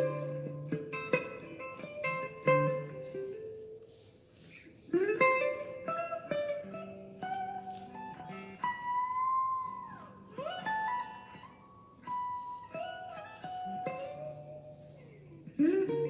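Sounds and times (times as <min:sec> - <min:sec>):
guitar chords ringing: 0:00.0 - 0:04.0
picked guitar notes: 0:00.0 - 0:16.0.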